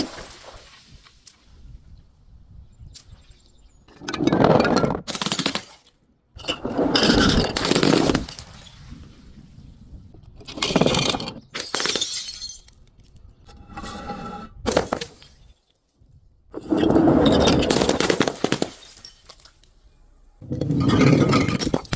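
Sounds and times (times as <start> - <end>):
glass crushing and shattering: 0.0 - 1.0, 5.2 - 8.8, 10.5 - 13.4, 14.7 - 15.8, 16.6 - 19.8, 20.4 - 21.9.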